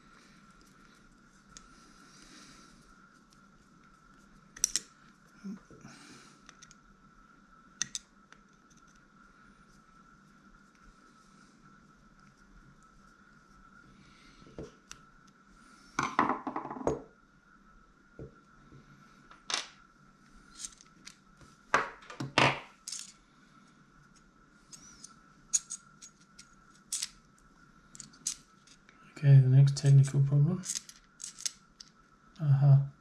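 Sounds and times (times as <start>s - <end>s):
metal reel parts clicking: 22.9s - 23.2s, 24.7s - 27.2s, 30.0s - 31.9s.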